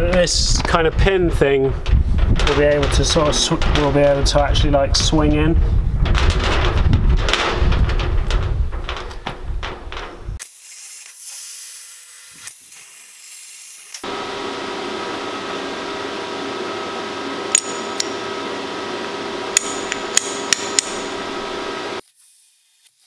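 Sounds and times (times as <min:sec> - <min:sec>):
steady mechanical hum: 0:00.0 - 0:10.4, 0:14.0 - 0:22.0
tool striking metal: 0:17.5 - 0:18.3, 0:19.5 - 0:22.0.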